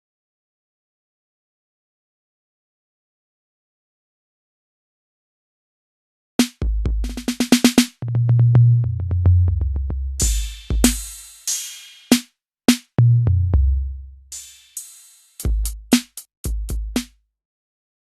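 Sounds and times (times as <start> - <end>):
snare drum hits and roll: 6.4 - 8.0, 10.2 - 13.0, 15.4 - 17.2
tom fill: 6.4 - 12.2
crash cymbal: 10.2 - 12.2, 14.3 - 15.5.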